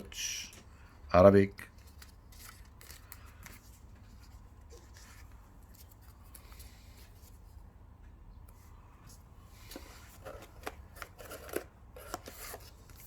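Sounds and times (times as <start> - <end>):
paper rustling: 1.7 - 7.5.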